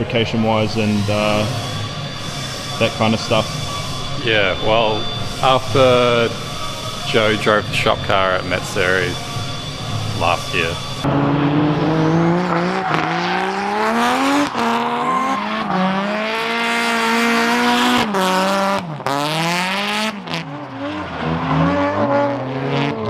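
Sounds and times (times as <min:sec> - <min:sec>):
tyres squealing: 0:00.7 - 0:18.1
car engine revving hard: 0:11.0 - 0:23.0.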